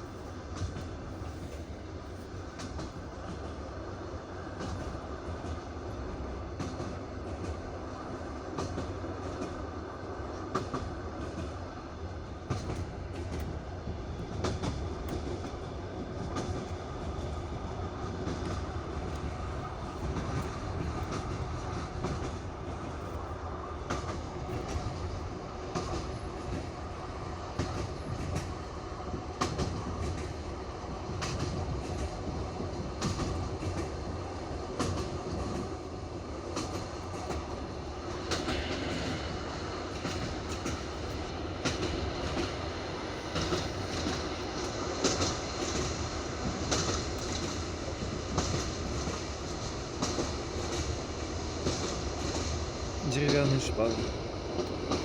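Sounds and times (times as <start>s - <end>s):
train wheels clattering over rail joints: 8.5s - 9.7s, 12.3s - 55.0s.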